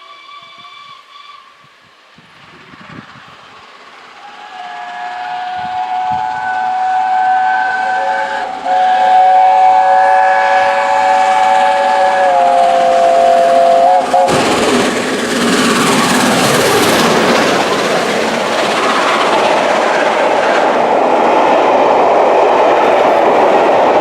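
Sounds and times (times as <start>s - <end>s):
steam locomotive chime whistle: 4.2s - 14.8s.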